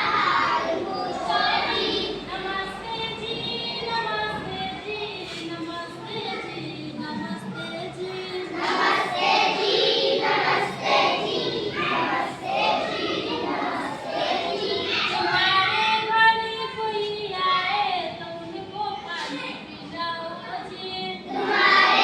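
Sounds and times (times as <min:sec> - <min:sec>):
child singing: 0:00.0 - 0:22.0.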